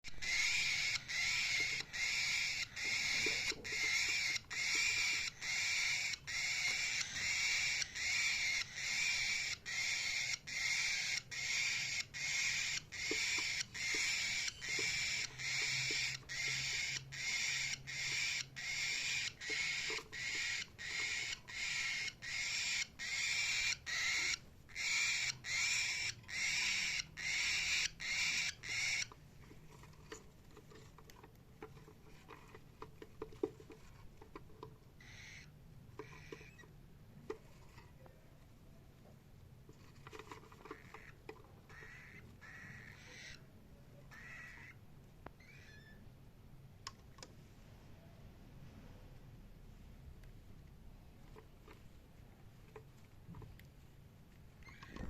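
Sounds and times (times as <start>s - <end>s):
cockatiel chirping: 0.1s - 29.2s, 35.0s - 36.7s, 41.8s - 43.4s, 45.4s - 46.0s.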